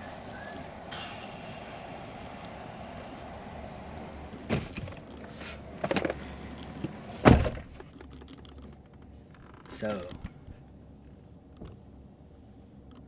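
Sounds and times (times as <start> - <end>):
fuel pump humming: 0.0 - 7.2.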